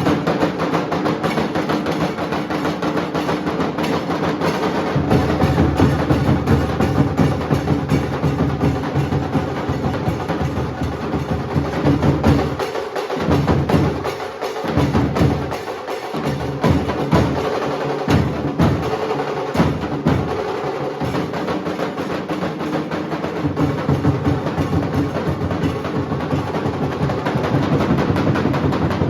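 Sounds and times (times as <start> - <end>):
barrel drums beating: 0.0 - 29.0.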